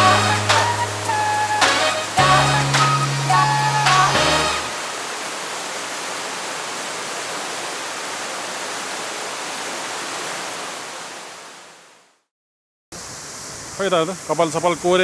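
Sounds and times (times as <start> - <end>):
waterfall roar: 0.0 - 11.7.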